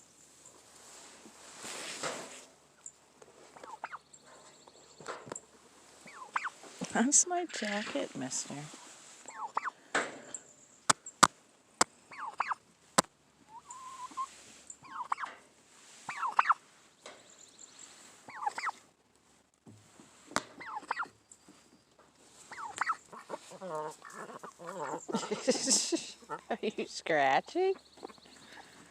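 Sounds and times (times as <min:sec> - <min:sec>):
turkeys gobbling: 0:03.6 - 0:04.0, 0:06.0 - 0:06.7, 0:09.2 - 0:09.8, 0:12.1 - 0:12.6, 0:13.4 - 0:15.4, 0:16.0 - 0:16.6, 0:18.3 - 0:18.8, 0:20.4 - 0:21.2, 0:22.4 - 0:26.6.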